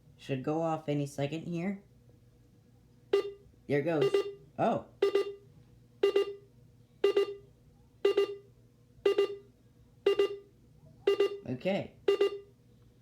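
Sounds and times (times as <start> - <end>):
alarm clock double beeps: 3.2 - 3.4, 4.0 - 4.4, 5.0 - 5.4, 6.0 - 6.4, 7.0 - 9.5, 10.1 - 10.5, 11.1 - 11.5, 12.1 - 12.5.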